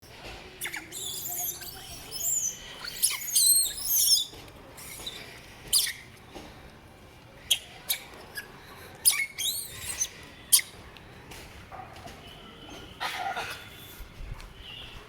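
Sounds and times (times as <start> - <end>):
baby monkey squealing: 0.6 - 6.0, 7.5 - 10.7.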